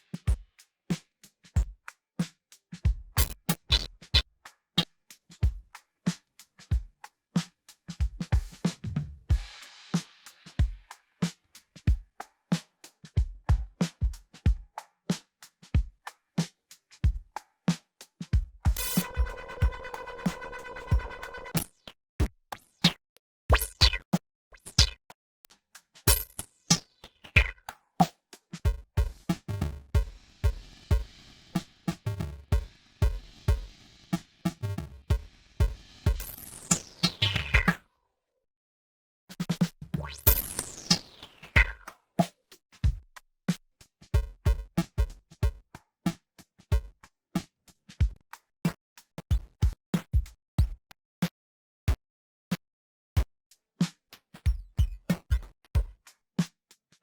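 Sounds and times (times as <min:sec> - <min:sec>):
bitcrushed drum machine beat: 0:07.9 - 0:12.2, 0:13.0 - 0:14.8, 0:18.2 - 0:21.6, 0:28.6 - 0:37.8, 0:44.0 - 0:45.8, 0:46.6 - 0:48.2, 0:49.2 - 0:50.8, 0:54.1 - 0:56.5
electronic drum machine beat: 0:18.7 - 0:21.6, 0:28.7 - 0:37.7.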